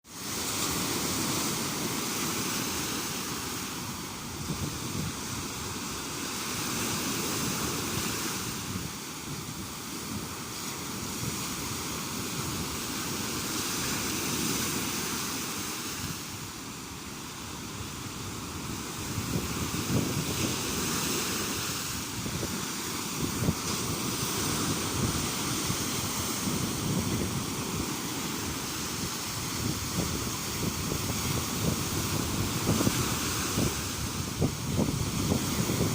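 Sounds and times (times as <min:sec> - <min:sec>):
sea waves washing ashore: 0:00.0 - 0:35.9
wind buffeting microphone: 0:04.1 - 0:05.9, 0:17.7 - 0:35.9.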